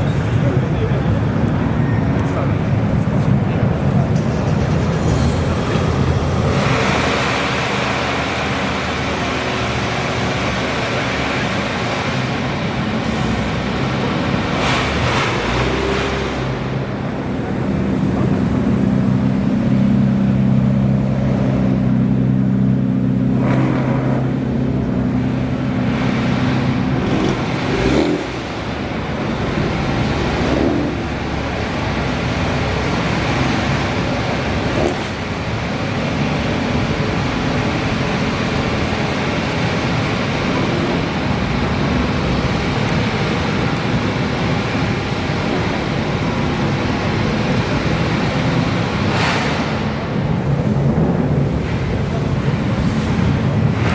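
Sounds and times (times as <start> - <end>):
car engines driving past: 0.0 - 53.9
engine low hum: 0.0 - 53.9.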